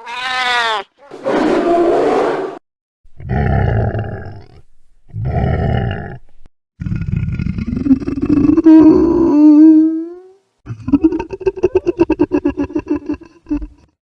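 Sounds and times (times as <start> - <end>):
creature growls and roars: 3.2 - 6.2, 6.8 - 9.7.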